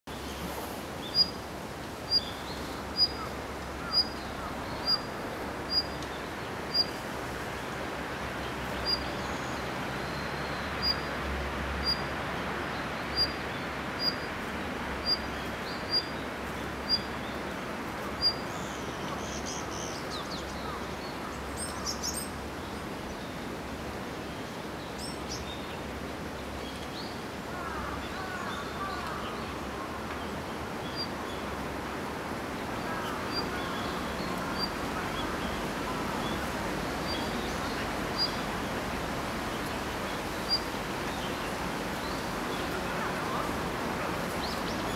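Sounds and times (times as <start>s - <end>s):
background noise haze: 0.1s - 44.9s.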